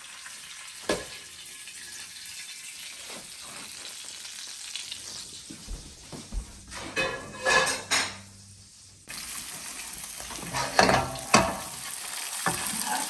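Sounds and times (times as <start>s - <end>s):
fish sizzling in a frying pan: 0.0s - 5.5s, 8.6s - 13.0s
utensil clattering against pan: 7.0s - 8.2s, 10.3s - 11.8s.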